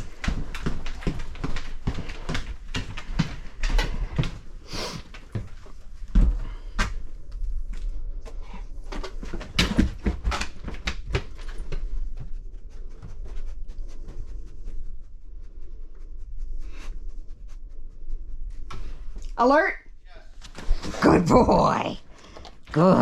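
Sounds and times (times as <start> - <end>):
dog panting and sniffing: 0.0 - 6.8, 8.0 - 19.2.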